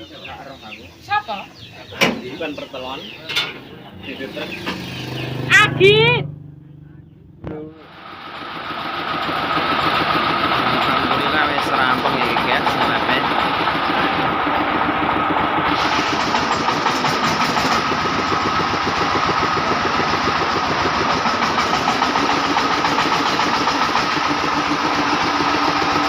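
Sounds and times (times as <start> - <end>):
corn sheller engine running: 7.7 - 26.0.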